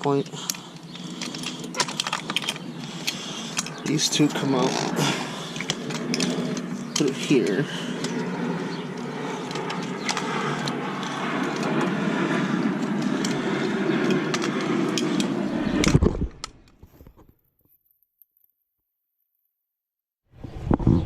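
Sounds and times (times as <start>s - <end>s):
steady rushing noise: 0.0s - 16.7s.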